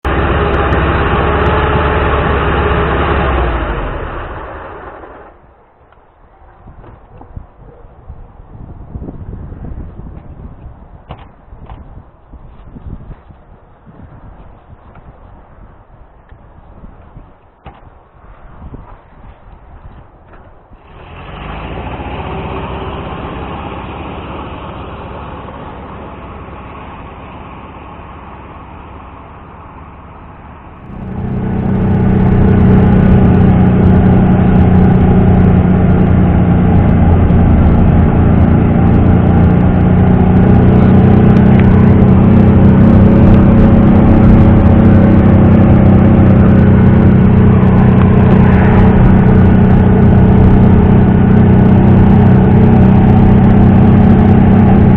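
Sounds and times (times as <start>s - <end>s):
car engine running: 0.0s - 5.6s, 20.3s - 54.9s.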